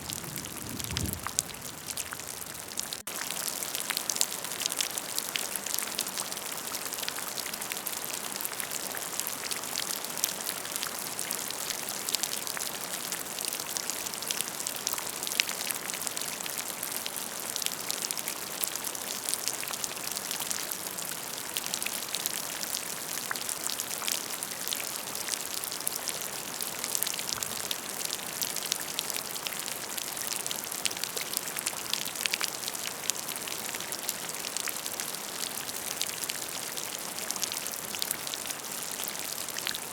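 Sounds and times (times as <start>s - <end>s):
steady rain with drop impacts: 0.0s - 39.9s.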